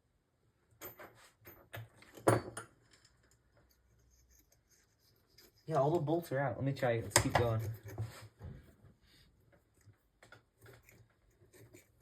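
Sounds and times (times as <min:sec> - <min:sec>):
metal tools clicking and knocking: 0:00.8 - 0:03.6.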